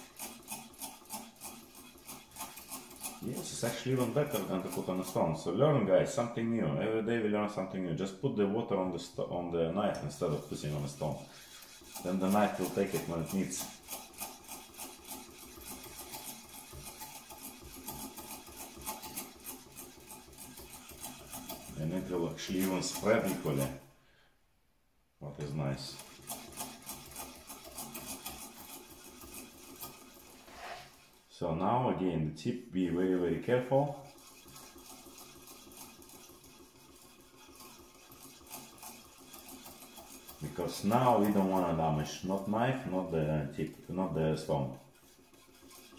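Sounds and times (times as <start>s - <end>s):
knife rubbing on a wet whetstone: 0.0s - 5.5s, 10.0s - 23.8s, 25.4s - 31.4s, 32.4s - 45.9s.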